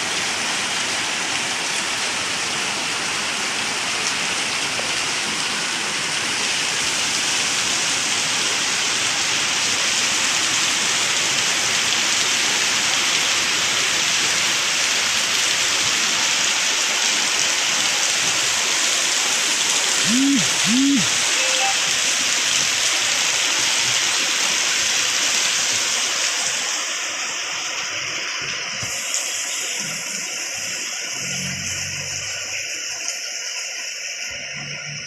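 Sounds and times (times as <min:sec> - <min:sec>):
rain falling: 0:00.0 - 0:35.0.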